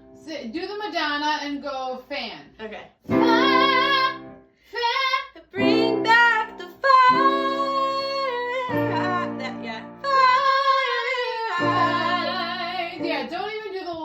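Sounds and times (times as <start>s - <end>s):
person singing with vibrato: 3.1s - 13.5s.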